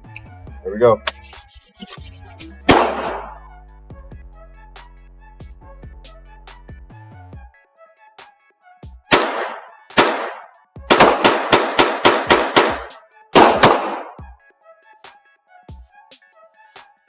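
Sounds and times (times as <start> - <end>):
pistol shots: 2.7 - 3.4, 9.1 - 14.2.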